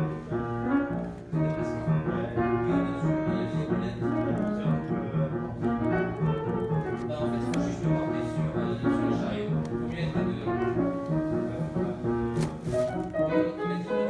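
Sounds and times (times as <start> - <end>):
instrumental music: 0.0 - 14.0.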